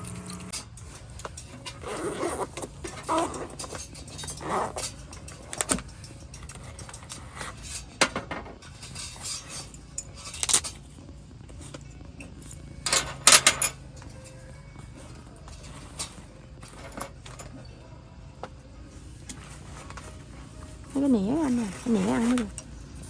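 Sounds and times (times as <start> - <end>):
faint low hum: 0.0 - 23.0
metal dishes and utensils clinking: 0.2 - 10.9, 11.6 - 14.3, 15.4 - 17.9.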